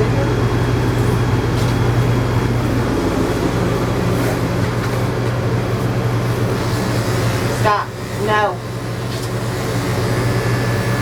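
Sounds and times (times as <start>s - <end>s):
electric clippers humming: 0.0s - 11.0s.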